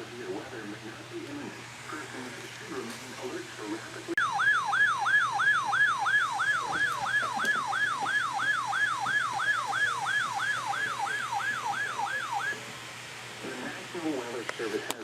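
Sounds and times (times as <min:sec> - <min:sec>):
electronic siren warning tone: 0:04.2 - 0:12.7.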